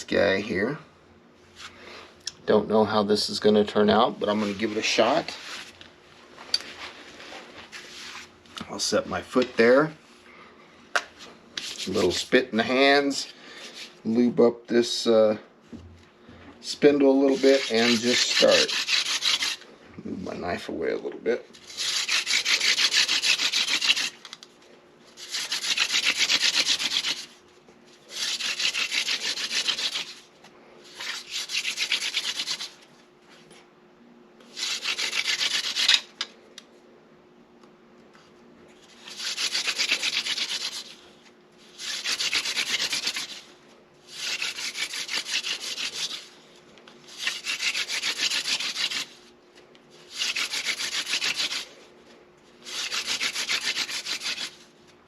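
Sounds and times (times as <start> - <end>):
wooden spindle grinding: 17.3 - 19.6.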